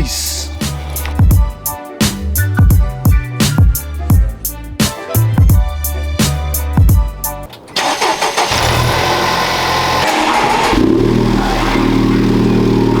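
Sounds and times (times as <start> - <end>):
music: 0.0 - 8.2
car engine starting and running: 7.5 - 13.0.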